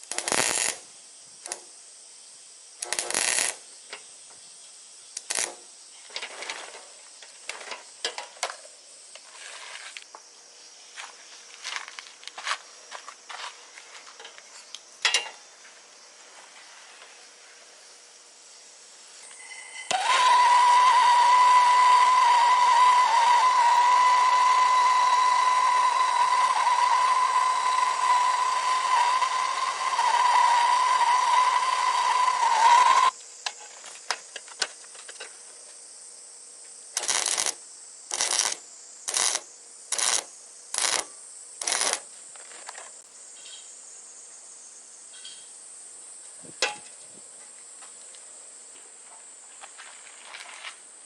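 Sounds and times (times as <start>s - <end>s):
wire welder hiss and whine: 0.0s - 2.0s, 2.6s - 10.2s, 19.1s - 35.7s, 36.9s - 43.1s
short hissing bursts: 0.0s - 3.8s.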